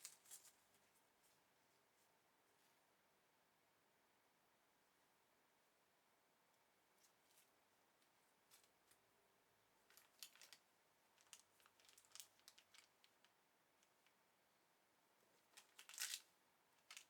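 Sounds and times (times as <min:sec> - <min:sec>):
plastic packaging rustling: 0:10.0 - 0:10.6, 0:11.2 - 0:13.1, 0:15.6 - 0:16.2.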